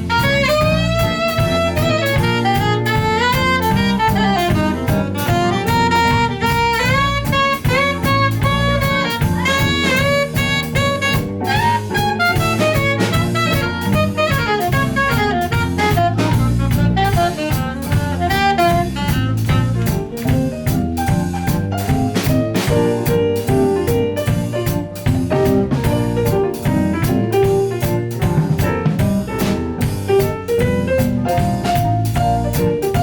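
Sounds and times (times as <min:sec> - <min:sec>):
jazz ensemble playing: 0:00.0 - 0:33.0.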